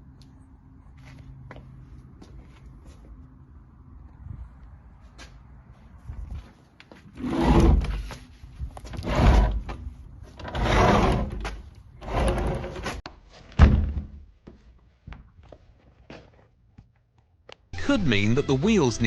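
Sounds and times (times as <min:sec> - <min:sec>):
bifold door rolling along track: 0:08.9 - 0:13.0.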